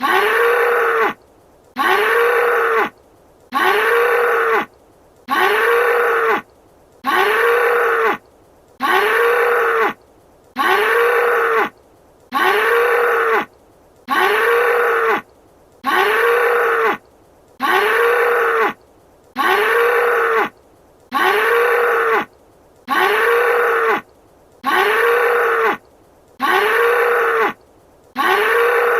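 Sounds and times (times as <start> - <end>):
bull bellowing: 0.0 - 1.2, 1.8 - 2.9, 3.5 - 4.7, 5.3 - 6.4, 7.0 - 8.2, 8.8 - 10.0, 10.6 - 11.7, 12.3 - 13.5, 14.1 - 15.2, 15.8 - 17.0, 21.1 - 22.3, 22.9 - 24.0, 24.6 - 25.8, 26.4 - 27.6, 28.2 - 28.9.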